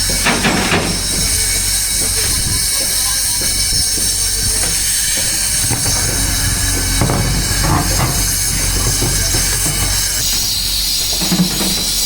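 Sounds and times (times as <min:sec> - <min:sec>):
metal knocks and clanks: 0:00.0 - 0:02.2, 0:03.5 - 0:12.0
diesel engine running: 0:00.0 - 0:11.7.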